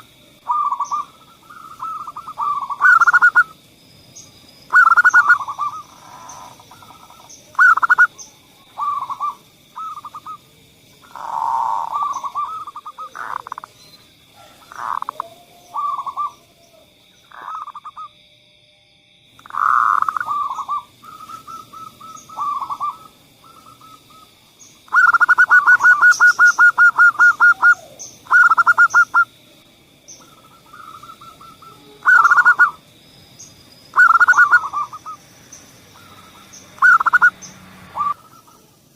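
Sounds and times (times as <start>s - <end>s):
rolling bird trill: 0.0s - 10.4s, 19.5s - 29.3s, 30.1s - 38.8s
doves cooing: 0.0s - 18.1s, 19.4s - 29.4s, 30.1s - 38.9s
faint steady high tone: 20.2s - 35.2s.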